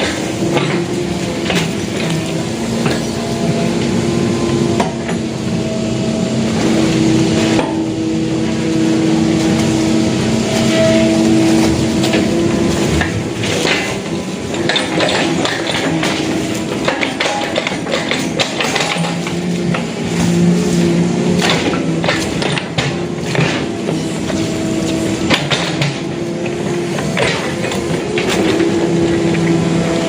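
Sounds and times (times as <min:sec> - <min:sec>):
metal clanks and knocks: 0:00.0 - 0:03.9, 0:10.5 - 0:29.6
excavator diesel engine: 0:00.0 - 0:30.0.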